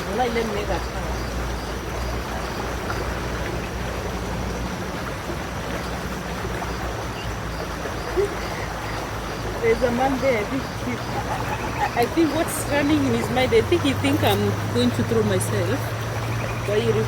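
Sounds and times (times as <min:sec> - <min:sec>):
river running over stones: 0:00.0 - 0:17.0.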